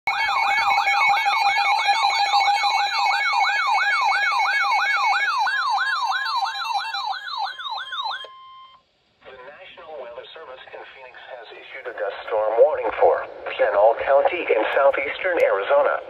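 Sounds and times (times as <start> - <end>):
steady held tones: 0.1 - 8.8.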